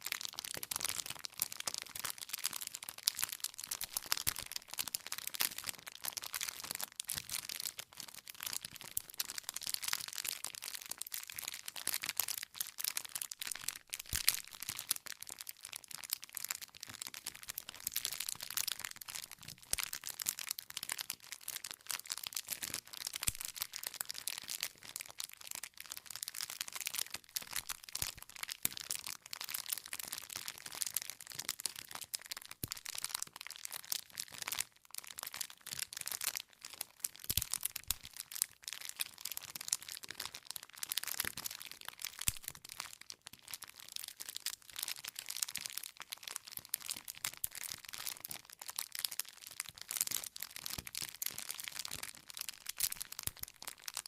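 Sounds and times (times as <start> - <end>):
campfire crackling and popping: 42.2 - 42.6, 52.7 - 53.5.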